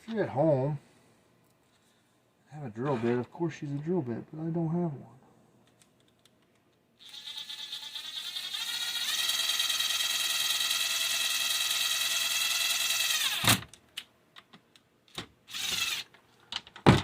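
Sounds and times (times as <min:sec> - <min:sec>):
drill whining: 0:07.0 - 0:13.6, 0:15.5 - 0:16.1.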